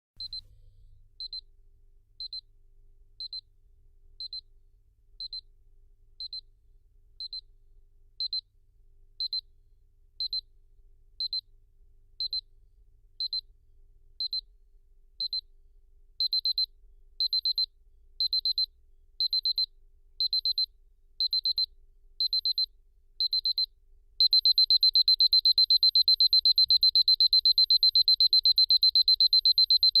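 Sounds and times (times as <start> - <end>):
electronic alarm clock beeps: 0.2 - 0.4, 1.2 - 1.4, 2.2 - 2.4, 3.2 - 3.4, 4.2 - 4.5, 5.2 - 5.4, 6.2 - 6.4, 7.2 - 7.5, 8.2 - 8.4, 9.2 - 9.4, 10.2 - 10.4, 11.2 - 11.4, 12.2 - 12.5, 13.2 - 13.4, 14.2 - 14.5, 15.2 - 15.5, 16.2 - 30.0.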